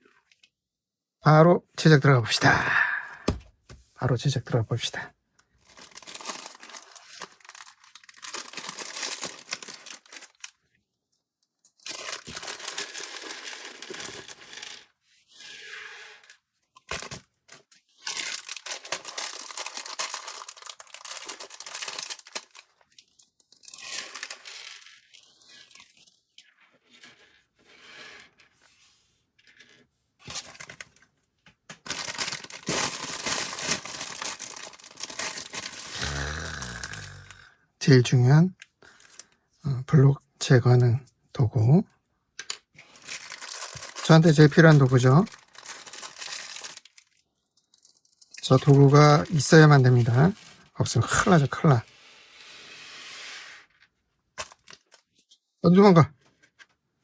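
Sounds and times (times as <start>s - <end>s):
plastic bags ripping and crinkling: 5.6s - 10.6s, 11.8s - 14.8s, 16.9s - 25.9s, 31.8s - 37.4s, 42.8s - 51.5s.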